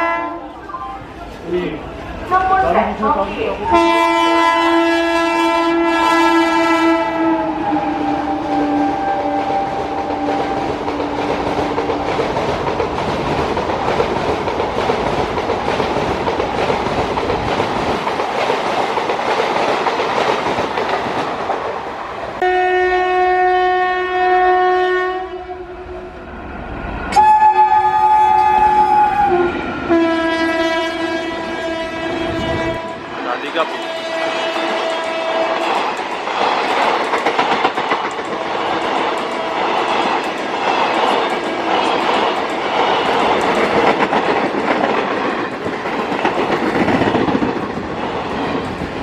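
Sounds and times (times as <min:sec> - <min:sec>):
train horn blasts: 0:00.0 - 0:01.1, 0:03.6 - 0:11.2, 0:22.4 - 0:26.1, 0:27.1 - 0:35.6
train wheels clattering over rails: 0:07.8 - 0:21.8, 0:32.4 - 0:49.0.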